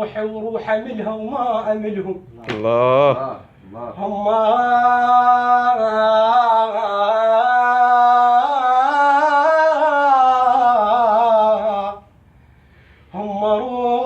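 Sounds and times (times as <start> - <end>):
man singing unaccompanied: 0.0 - 12.1, 13.1 - 14.0.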